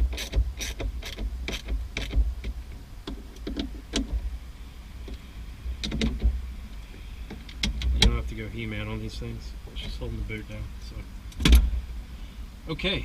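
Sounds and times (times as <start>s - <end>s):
plastic parts clicking and knocking: 5.8s - 6.4s.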